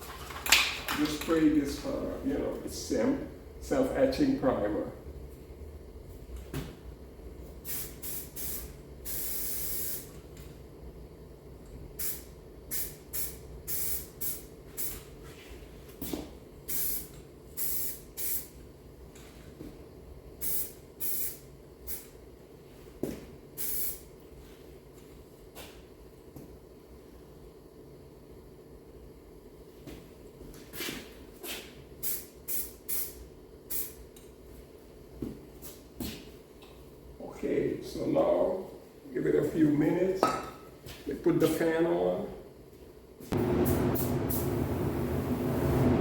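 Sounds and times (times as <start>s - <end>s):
spray can hissing: 7.7s - 10.1s, 32.0s - 34.0s.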